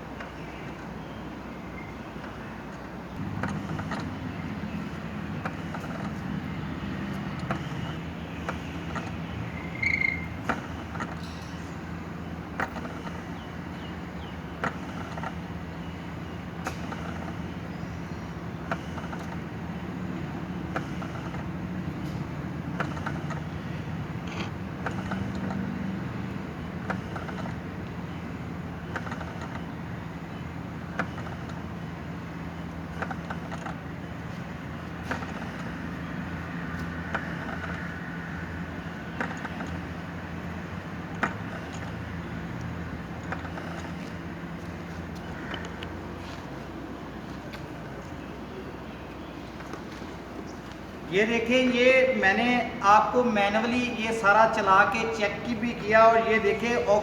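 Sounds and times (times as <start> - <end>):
motor humming: 0.1 - 57.0
loud squeak: 9.6 - 10.4.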